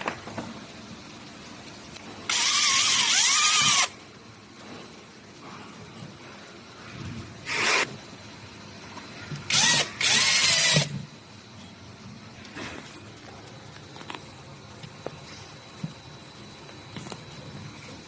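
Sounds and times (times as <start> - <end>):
power drill motor whine: 2.3 - 4.0, 7.4 - 8.0, 9.5 - 11.0.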